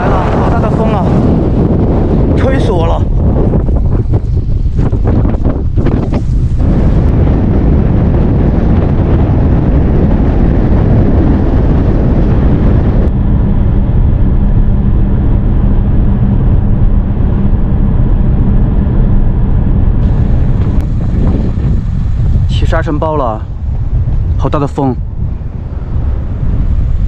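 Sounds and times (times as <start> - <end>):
strong wind buffeting microphone: 0.0 - 27.0.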